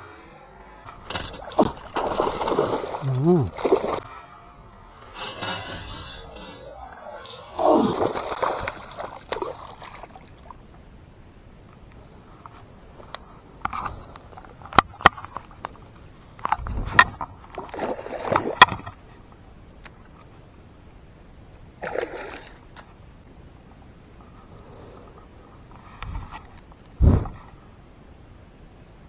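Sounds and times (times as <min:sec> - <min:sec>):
water splashing: 0:01.0 - 0:10.6.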